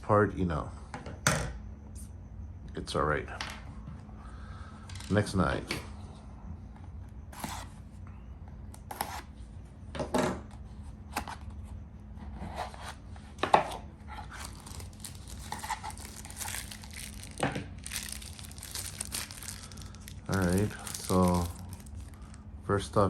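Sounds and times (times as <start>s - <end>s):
packaging crinkling: 14.2s - 22.4s
packaging ripping and rustling: 14.2s - 22.4s.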